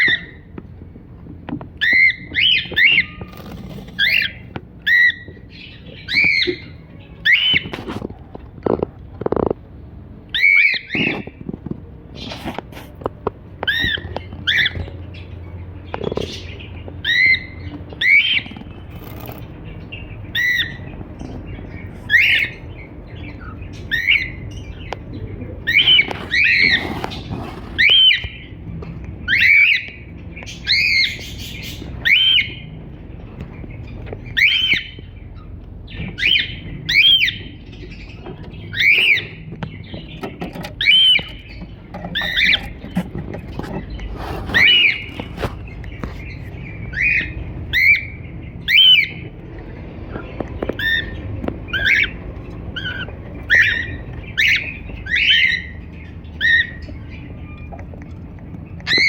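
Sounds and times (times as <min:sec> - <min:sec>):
cockatiel chirping: 0:01.8 - 0:07.7, 0:10.4 - 0:11.3, 0:20.3 - 0:20.9, 0:25.6 - 0:28.5, 0:29.3 - 0:32.6, 0:38.7 - 0:39.4, 0:40.8 - 0:43.0, 0:43.7 - 0:49.2, 0:50.7 - 0:57.7.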